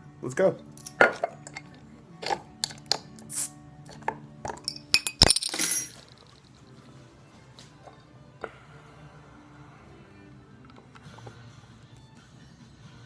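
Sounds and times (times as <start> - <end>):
glass bottle clinking: 0.8 - 3.1, 3.9 - 6.4.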